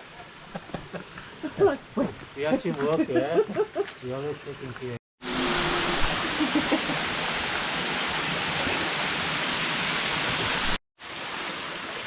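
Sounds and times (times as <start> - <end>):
waterfall rushing: 5.2 - 12.0.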